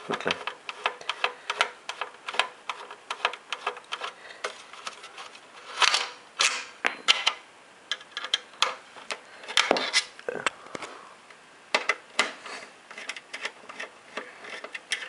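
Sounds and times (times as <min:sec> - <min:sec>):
scraping noises: 0:02.3 - 0:06.1, 0:12.4 - 0:15.0.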